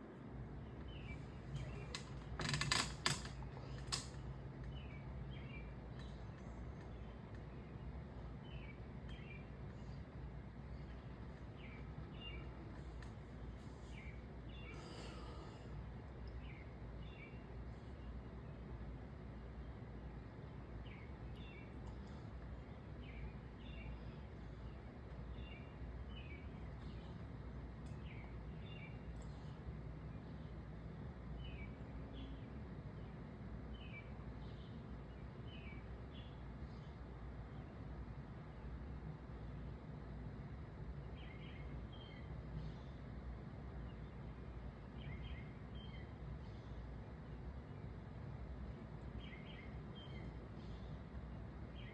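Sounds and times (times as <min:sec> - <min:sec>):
low outdoor background hum: 0:00.0 - 0:51.9
songbird chirping: 0:00.6 - 0:02.3, 0:03.6 - 0:15.5, 0:16.2 - 0:30.6, 0:31.2 - 0:38.7, 0:40.9 - 0:43.0, 0:43.7 - 0:51.9
bird chirping: 0:44.9 - 0:46.7, 0:49.1 - 0:50.9.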